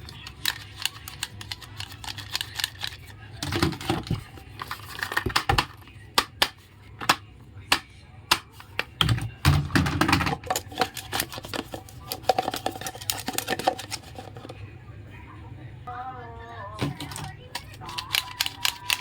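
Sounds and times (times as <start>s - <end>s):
toy pieces clicking together: 17.5s - 19.0s.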